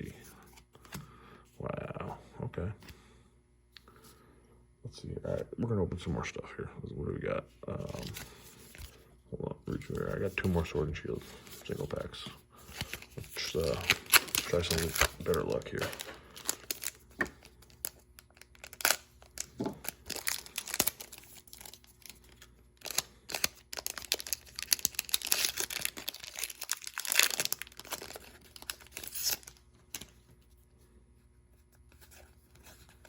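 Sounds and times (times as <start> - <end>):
foil wrapper tearing and crinkling: 12.6 - 30.1.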